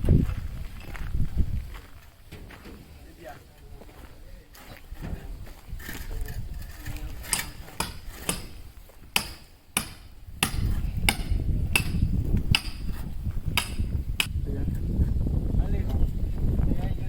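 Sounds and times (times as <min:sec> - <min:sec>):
hammer striking metal: 0:07.3 - 0:08.6, 0:09.2 - 0:12.9, 0:13.6 - 0:14.3.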